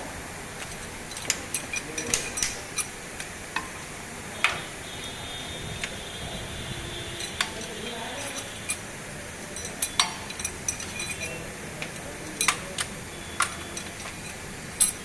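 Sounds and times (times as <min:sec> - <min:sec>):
metal tools clinking: 0:00.6 - 0:03.0, 0:07.1 - 0:15.0.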